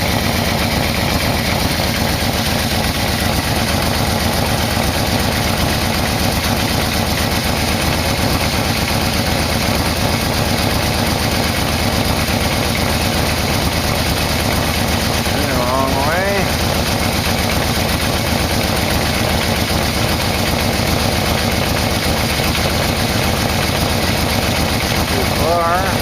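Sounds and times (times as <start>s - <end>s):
motorcycle engine idling: 0.0s - 26.0s.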